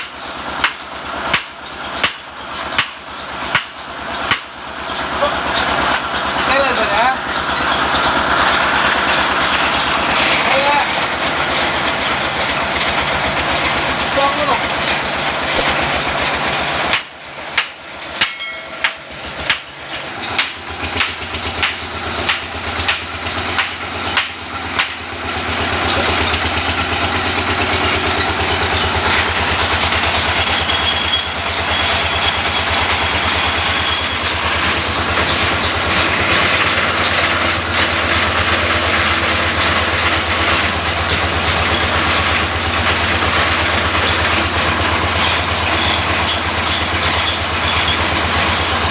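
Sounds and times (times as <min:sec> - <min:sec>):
drilling rig machinery humming: 0:00.0 - 0:48.9
drilling rig knocks: 0:14.8 - 0:25.0.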